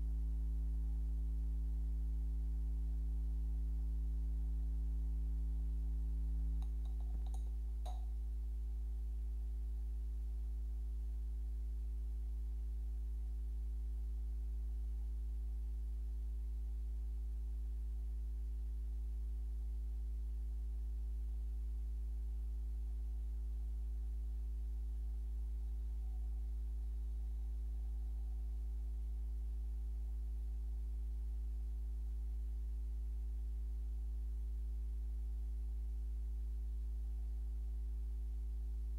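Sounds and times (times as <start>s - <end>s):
low electrical hum: 0.0s - 38.9s.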